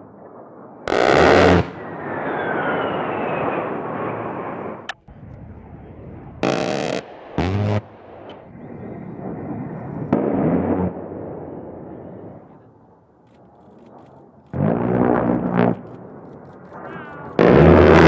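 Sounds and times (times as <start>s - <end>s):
rotary cannon firing: 0.9s - 1.9s, 6.4s - 8.4s.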